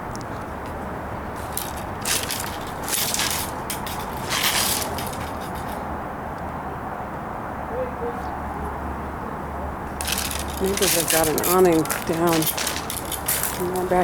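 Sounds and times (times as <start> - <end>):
low background rush: 0.0 - 6.1, 9.8 - 14.0
footsteps crunching on branches: 1.3 - 5.8, 10.0 - 14.0.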